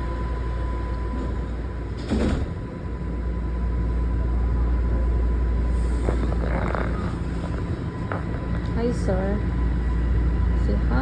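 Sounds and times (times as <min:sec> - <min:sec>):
train rumbling: 0:00.0 - 0:11.0
train doors sliding shut: 0:00.6 - 0:02.8.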